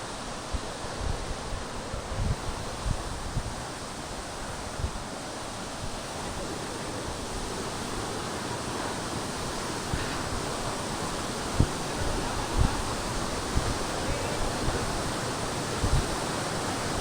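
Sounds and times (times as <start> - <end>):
waterfall rushing: 0.0 - 17.0
wind thumps on microphone: 0.5 - 5.1, 9.4 - 15.2, 15.8 - 17.0.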